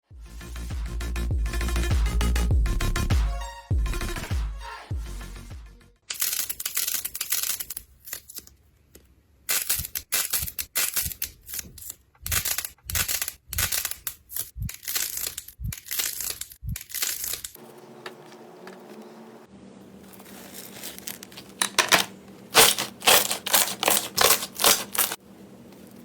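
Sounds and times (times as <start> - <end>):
crunchy slime crackling: 20.0 - 21.6, 22.5 - 25.2.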